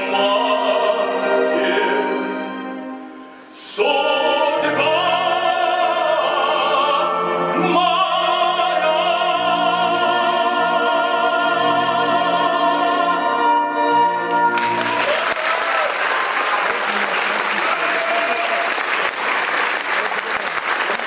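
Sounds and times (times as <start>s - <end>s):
operatic voice singing: 0.0s - 2.4s, 3.5s - 14.8s
orchestra playing: 0.0s - 21.0s.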